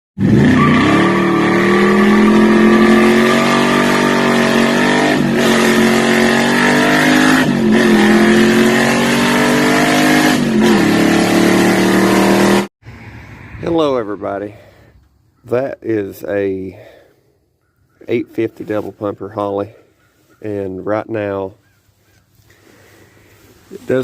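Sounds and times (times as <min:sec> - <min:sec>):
car engine accelerating through gears: 0:00.2 - 0:12.7.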